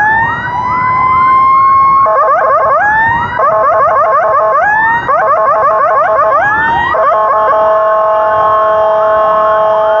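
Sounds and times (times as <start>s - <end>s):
electronic siren whooping: 0.0s - 10.0s.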